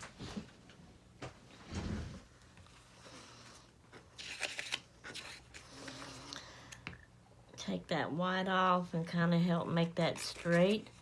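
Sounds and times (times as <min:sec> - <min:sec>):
paper rustling: 0:04.1 - 0:06.2.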